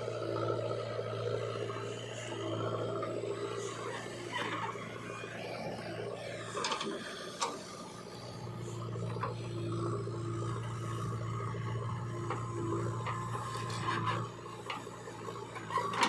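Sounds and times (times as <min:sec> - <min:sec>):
motor hum: 0:00.0 - 0:16.0
loader bucket scraping mud: 0:08.6 - 0:16.0.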